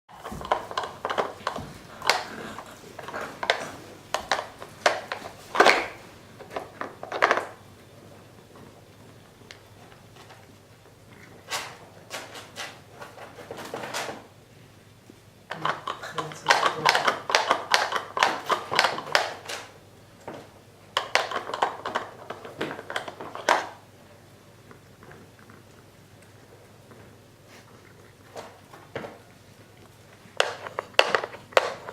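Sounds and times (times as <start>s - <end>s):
hard plastic pieces clacking: 0.2s - 7.6s, 21.0s - 23.8s.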